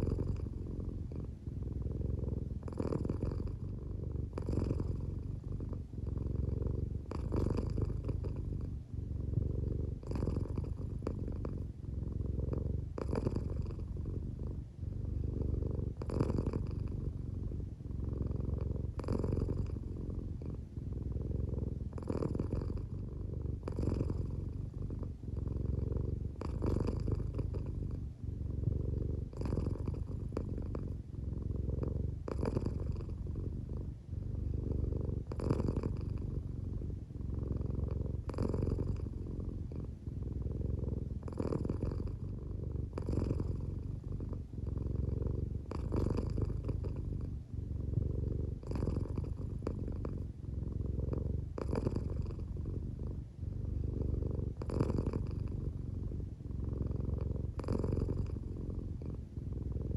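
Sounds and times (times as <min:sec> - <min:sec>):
cat purring: 0:00.0 - 0:59.9.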